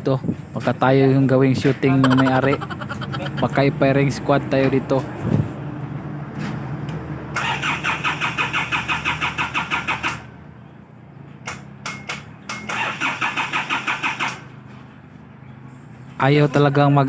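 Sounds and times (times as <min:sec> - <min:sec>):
diesel engine cranking: 0:06.3 - 0:10.4, 0:12.7 - 0:14.7.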